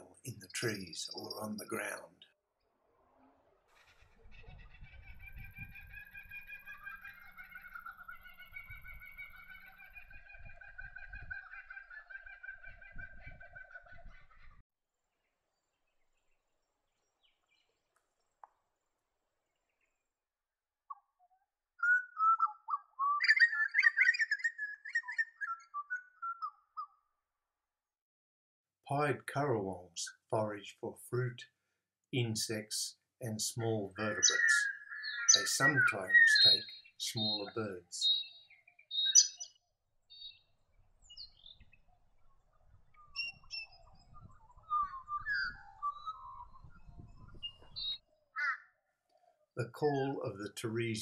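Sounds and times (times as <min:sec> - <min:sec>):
bird warbling song: 0:00.0 - 0:02.2, 0:03.2 - 0:14.6, 0:20.9 - 0:27.1, 0:33.5 - 0:51.0.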